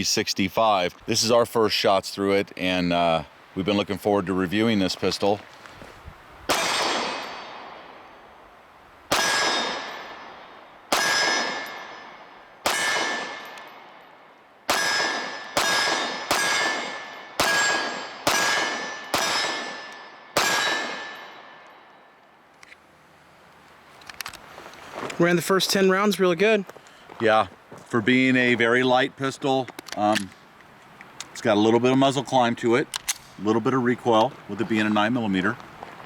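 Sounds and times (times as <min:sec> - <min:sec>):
pistol shots ringing: 0:06.5 - 0:08.2, 0:09.1 - 0:14.1, 0:14.7 - 0:22.0.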